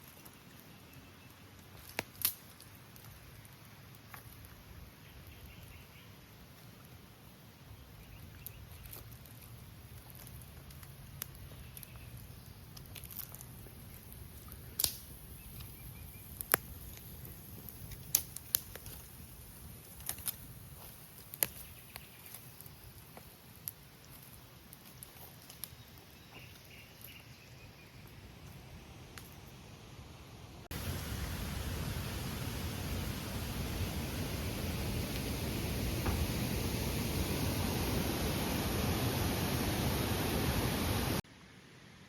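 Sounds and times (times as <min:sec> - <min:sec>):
river water rushing: 0:30.8 - 0:41.2.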